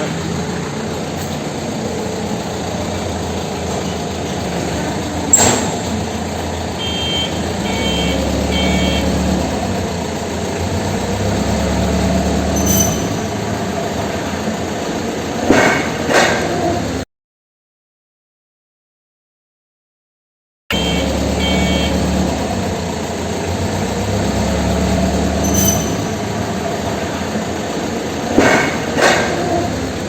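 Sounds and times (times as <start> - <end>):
truck engine running: 0.0 - 17.0, 20.7 - 30.0
reversing alarm beeping: 5.3 - 9.9, 20.7 - 22.7, 24.1 - 26.6.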